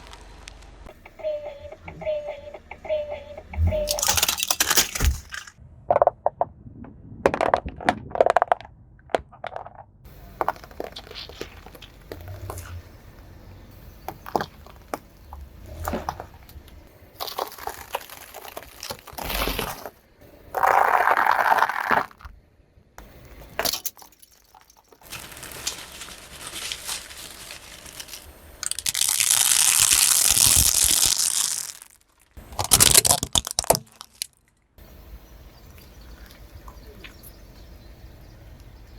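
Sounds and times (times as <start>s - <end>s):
objects crunching under car tyre: 3.7s - 22.4s, 23.2s - 34.6s.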